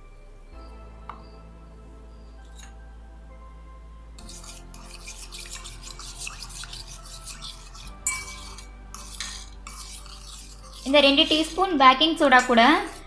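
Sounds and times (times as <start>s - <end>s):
soft background music: 0.0s - 13.0s
spoon scraping a bowl: 2.4s - 2.8s, 4.2s - 13.0s.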